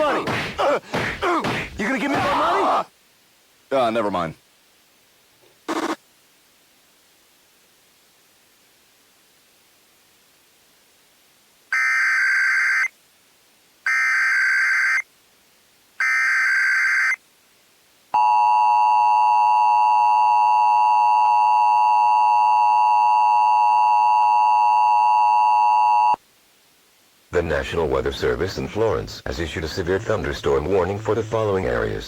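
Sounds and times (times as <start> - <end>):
digital data bursts: 5.7 - 6.0.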